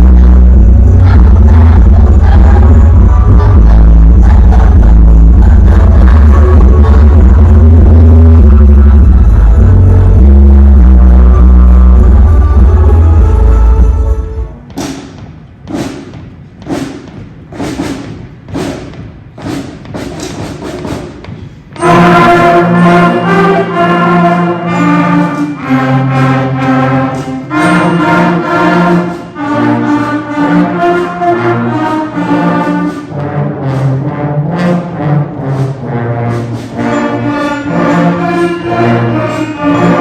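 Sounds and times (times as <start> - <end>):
held brass chords: 0.0 - 14.7, 21.8 - 40.0
instrumental band music: 0.0 - 40.0
drum hits: 14.6 - 21.9.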